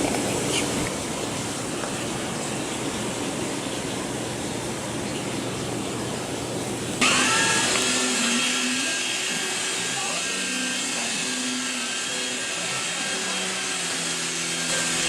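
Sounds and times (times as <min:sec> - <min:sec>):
small electric motor whining: 0:07.0 - 0:15.0.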